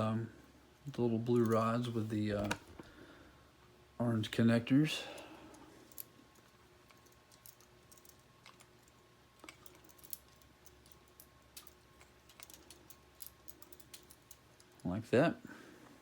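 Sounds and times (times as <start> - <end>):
faint steady hum: 0.0 - 16.0
plastic pieces clicking together: 6.9 - 14.8.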